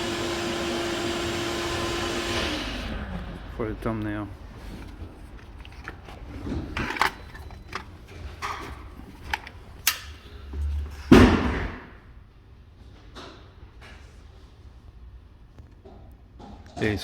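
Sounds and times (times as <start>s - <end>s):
loud clunk: 11.0s - 12.0s.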